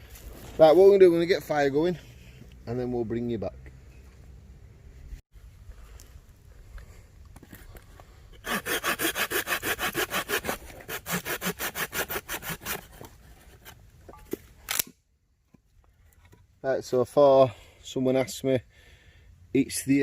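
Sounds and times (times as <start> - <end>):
saw rasping through wood: 8.4 - 13.1.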